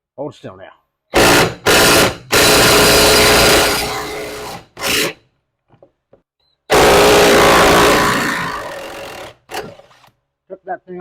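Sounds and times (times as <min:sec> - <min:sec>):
power wrench running: 0:01.2 - 0:05.2, 0:06.7 - 0:10.1.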